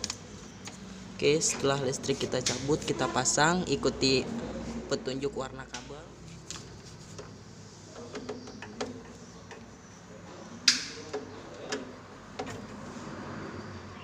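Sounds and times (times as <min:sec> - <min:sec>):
wiring connectors clicking: 0:00.0 - 0:00.8, 0:10.6 - 0:12.7.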